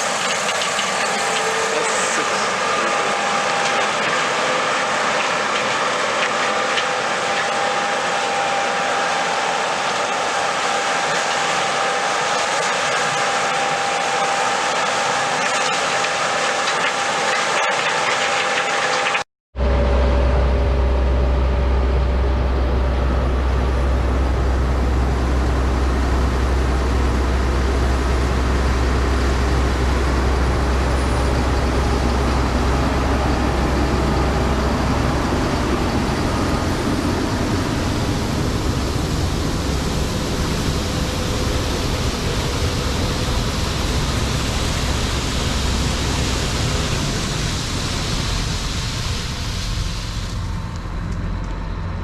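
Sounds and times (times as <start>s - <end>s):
engine rumbling: 19.6s - 52.0s.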